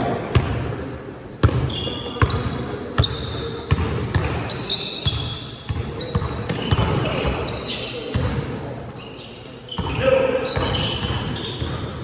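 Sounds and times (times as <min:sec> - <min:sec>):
sneakers squeaking on court: 0:00.3 - 0:12.0
basketball bouncing on gym floor: 0:01.4 - 0:04.5, 0:05.1 - 0:07.5.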